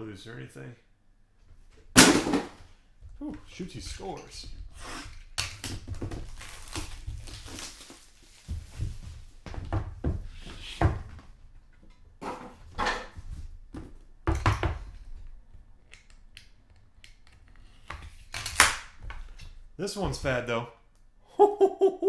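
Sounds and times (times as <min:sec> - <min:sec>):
cardboard boxes thunking: 0:02.0 - 0:02.6
packaging rustling: 0:05.6 - 0:09.3.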